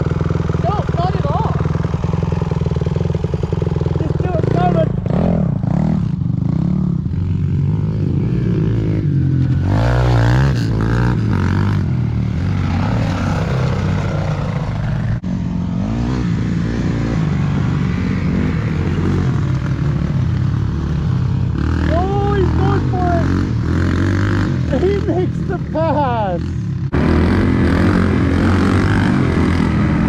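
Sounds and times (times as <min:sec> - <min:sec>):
dirt bike engine revving: 0:00.0 - 0:30.0.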